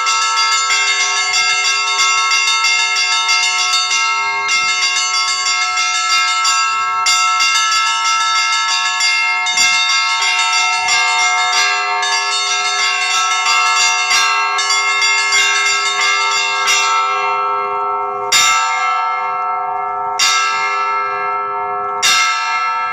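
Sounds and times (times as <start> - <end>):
small high bells striking: 0.0 - 17.3
large bells ringing: 0.0 - 22.9.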